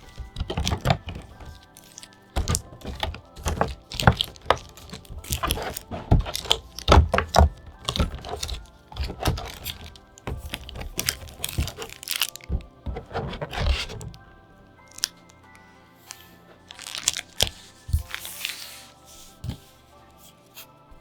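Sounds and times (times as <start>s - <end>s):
soft thuds: 0.0s - 14.4s
packaging clicks and taps: 0.0s - 20.7s.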